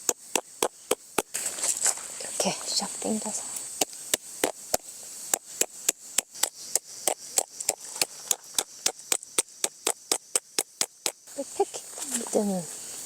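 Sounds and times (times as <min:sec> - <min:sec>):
tent peg being hammered: 0:03.8 - 0:11.2.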